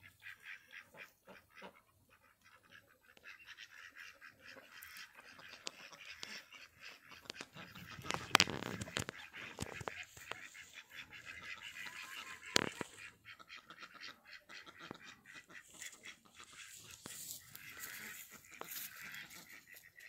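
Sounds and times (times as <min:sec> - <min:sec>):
ducks quacking: 0:00.0 - 0:20.0.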